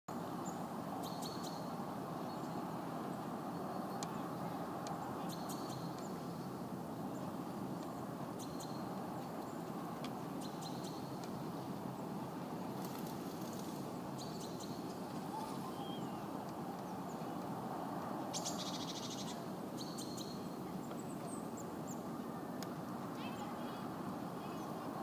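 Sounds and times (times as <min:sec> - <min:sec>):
steady outdoor noise: 0:00.1 - 0:25.0
high bird chirps: 0:14.2 - 0:16.4.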